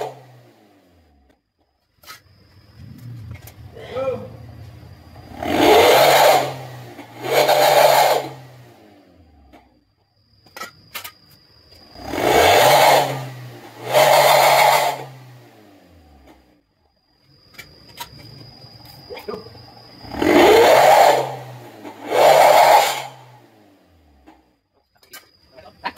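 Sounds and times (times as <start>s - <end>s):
car engine revving: 0.0s - 1.2s, 2.8s - 9.6s, 11.8s - 16.6s, 20.0s - 24.4s.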